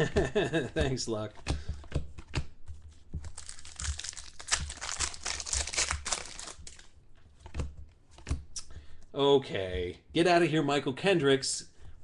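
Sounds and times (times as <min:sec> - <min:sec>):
foil wrapper tearing and crinkling: 0:03.3 - 0:06.9.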